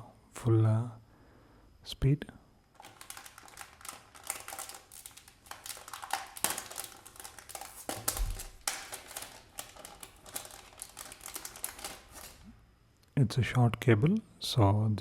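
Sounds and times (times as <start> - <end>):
cable handling clicks and rustles: 2.7 - 12.5.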